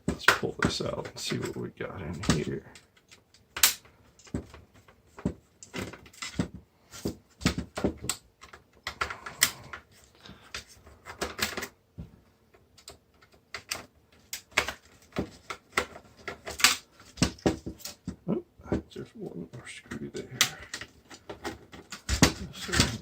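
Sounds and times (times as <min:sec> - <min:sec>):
plastic parts clicking and knocking: 0:00.0 - 0:23.0.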